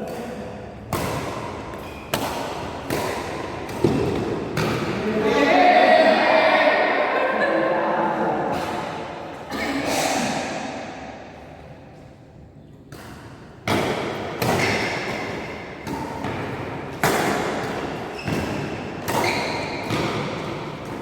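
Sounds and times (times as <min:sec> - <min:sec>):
racket hitting shuttlecock: 0:00.0 - 0:05.1, 0:08.4 - 0:09.5, 0:12.9 - 0:21.0.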